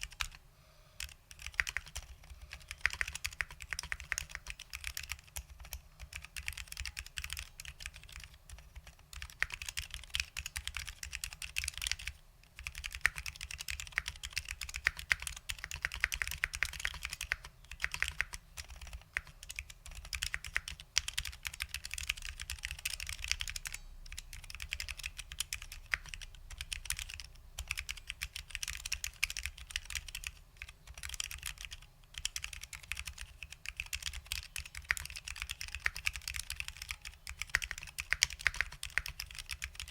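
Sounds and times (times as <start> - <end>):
fast typing on keyboard: 0.0 - 0.4, 1.0 - 39.9.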